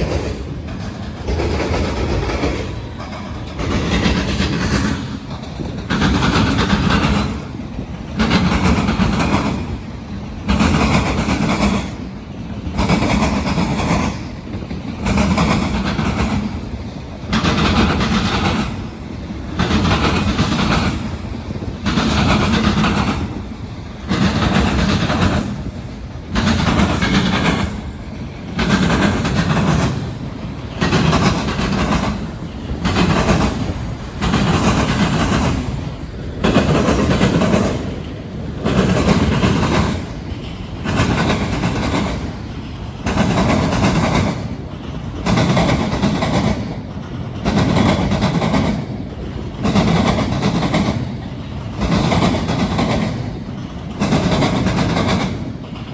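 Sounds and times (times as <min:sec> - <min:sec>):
train wheels clattering over crossings: 0:00.0 - 0:55.9.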